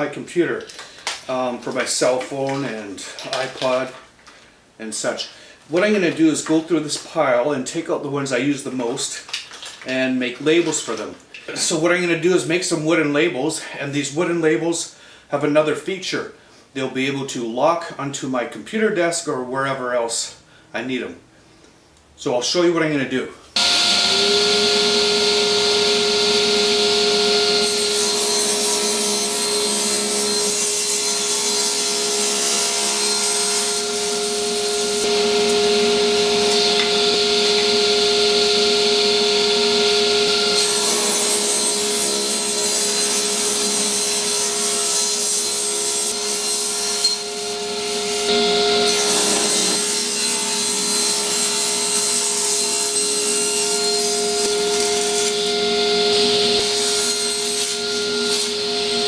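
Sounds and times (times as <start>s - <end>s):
hiss of cutting wood: 23.6s - 59.0s
power tool whining: 23.6s - 59.0s.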